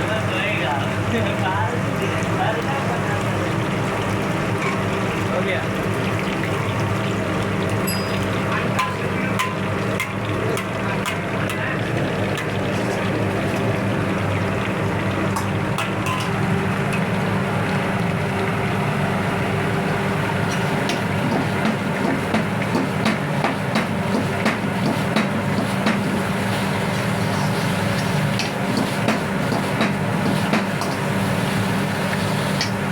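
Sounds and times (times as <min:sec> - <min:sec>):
low mechanical hum: 0:00.0 - 0:32.9.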